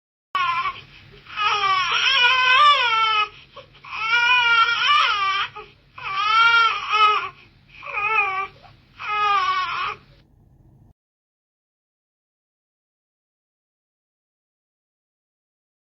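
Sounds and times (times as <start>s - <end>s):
baby crying: 0.4s - 10.2s.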